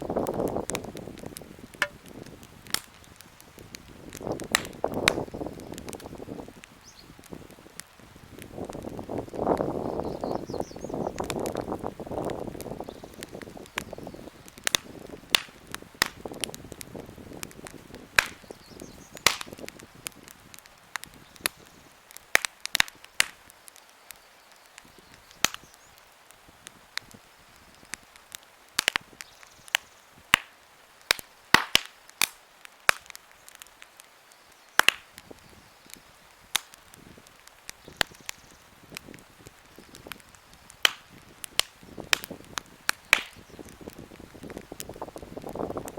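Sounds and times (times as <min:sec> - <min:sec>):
faint hiss: 0:00.0 - 0:45.9
wood campfire crackling: 0:00.0 - 0:45.9.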